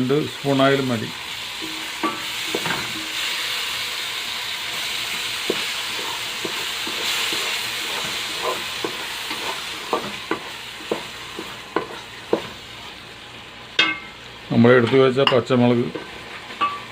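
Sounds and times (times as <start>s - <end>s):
masala sizzling in a pan: 0.0s - 16.9s
spoon tapping and scraping pan: 1.6s - 3.2s, 5.4s - 12.6s, 13.8s - 14.1s, 14.8s - 16.9s.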